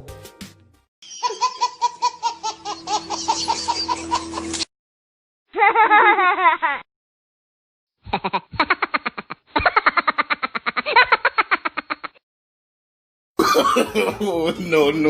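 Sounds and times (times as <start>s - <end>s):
wavering giggling laugh: 1.1s - 4.6s, 5.6s - 6.8s, 8.0s - 12.2s.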